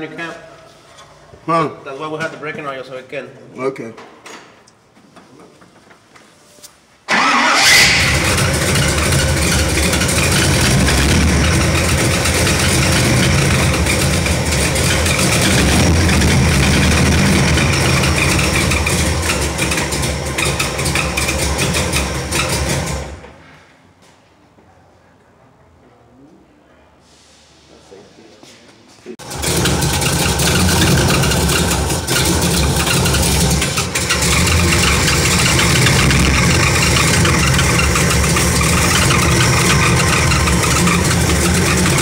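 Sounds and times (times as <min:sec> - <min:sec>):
car engine running: 0:07.5 - 0:23.2, 0:29.2 - 0:42.0.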